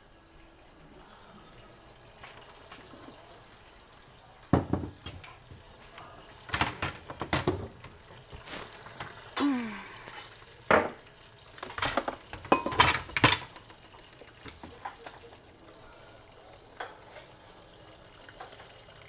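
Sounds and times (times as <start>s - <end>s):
pots and pans clattering: 4.4s - 9.4s, 10.0s - 15.4s.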